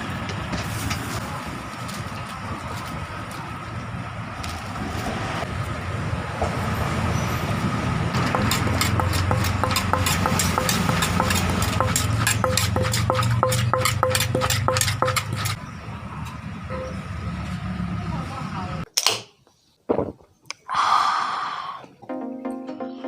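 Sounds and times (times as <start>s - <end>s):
low street hum: 0.0s - 20.6s
pestle pounding in mortar: 8.2s - 15.6s.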